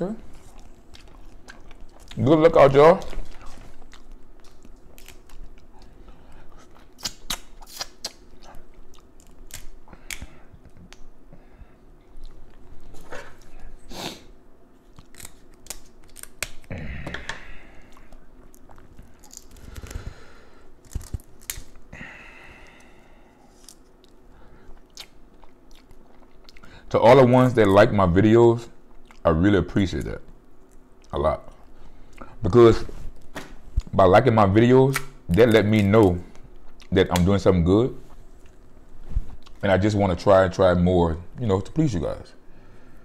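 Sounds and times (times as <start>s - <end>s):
person chewing and crunching: 0.4s - 2.3s, 2.9s - 11.1s, 14.9s - 16.8s, 17.8s - 20.1s, 23.6s - 26.7s, 28.9s - 29.2s
crab shell cracking: 3.9s - 5.8s, 9.0s - 11.1s, 14.9s - 20.0s, 20.8s - 21.8s.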